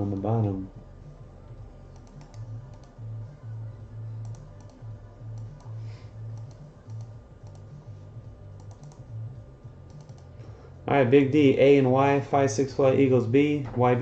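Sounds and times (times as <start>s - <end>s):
typing on computer keyboard: 1.9s - 2.9s, 4.2s - 5.7s, 6.3s - 7.7s, 8.6s - 9.1s, 9.9s - 10.3s.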